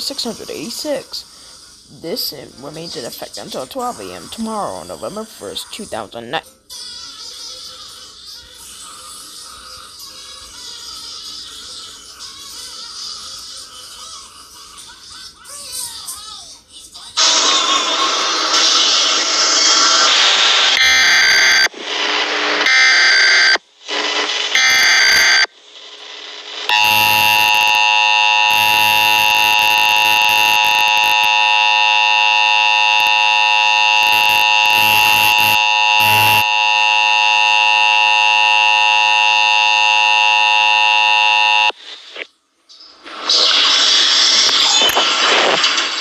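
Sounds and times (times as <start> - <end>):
screechy digital data bursts: 18.5 - 41.8
harsh two-tone attention signal: 20.8 - 21.7, 26.7 - 41.8.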